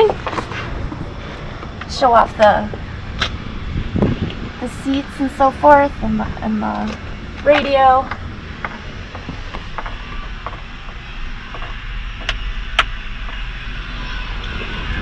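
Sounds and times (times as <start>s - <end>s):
steady low rumble: 0.0s - 15.0s.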